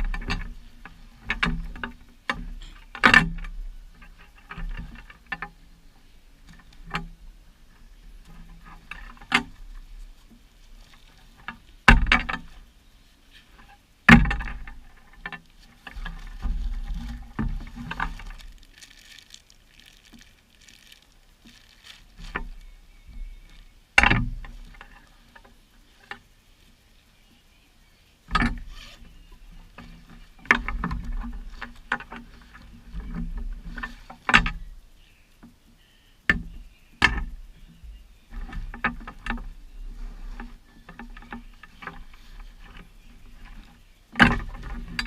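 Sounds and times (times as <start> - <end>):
packaging rustling: 16.0 - 23.7.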